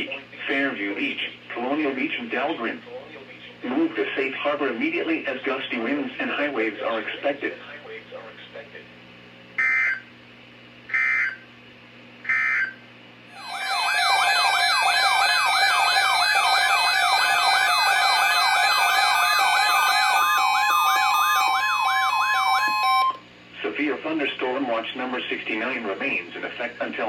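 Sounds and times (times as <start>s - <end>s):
siren-like alert tone: 9.6s - 10.0s, 10.9s - 11.4s, 12.3s - 12.8s, 13.4s - 23.2s
digital data bursts: 12.3s - 12.7s, 13.4s - 23.1s
steady tone: 12.3s - 12.8s, 13.4s - 23.2s.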